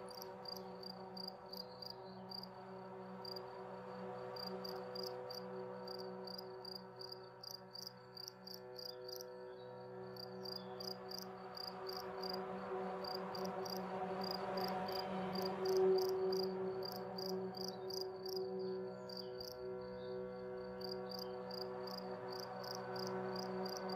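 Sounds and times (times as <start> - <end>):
ambient music drone: 0.0 - 23.9
cricket chirping: 19.1 - 19.6.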